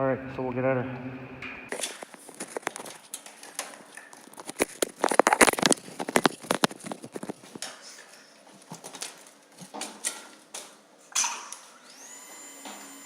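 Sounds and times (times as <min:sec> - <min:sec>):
dense crackling: 0:01.7 - 0:07.7.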